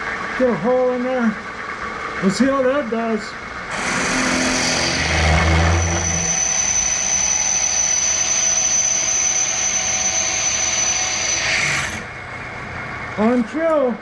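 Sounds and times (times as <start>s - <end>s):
drill press cutting with whine: 3.7s - 12.2s.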